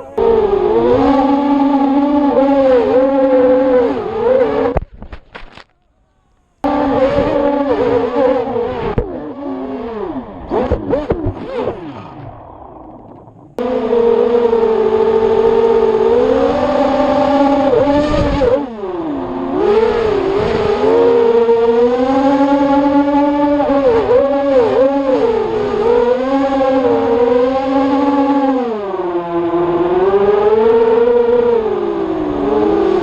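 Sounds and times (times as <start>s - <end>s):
quadcopter motors buzzing: 0.0s - 4.8s.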